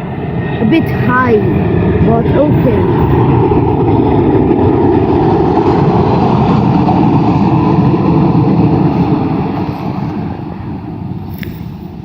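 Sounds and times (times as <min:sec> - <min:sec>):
jet airliner engines rumbling: 0:00.0 - 0:12.0.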